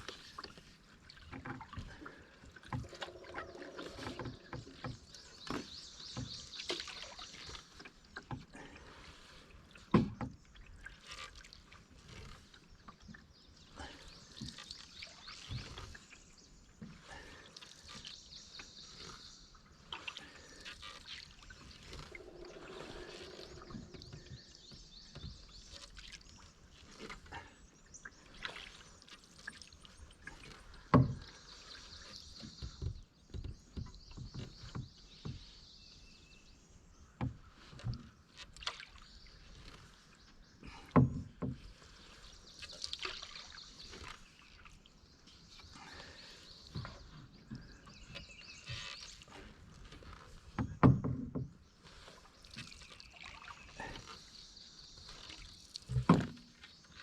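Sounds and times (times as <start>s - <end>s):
water dripping off paddle: 0.0s - 19.2s, 19.8s - 35.4s, 37.2s - 51.2s, 51.8s - 54.4s, 55.0s - 57.0s
paddle knocking against canoe: 0.1s - 8.7s, 9.7s - 13.2s, 21.6s - 26.2s, 30.2s - 35.7s, 37.0s - 41.9s, 45.8s - 52.8s, 55.1s - 57.0s.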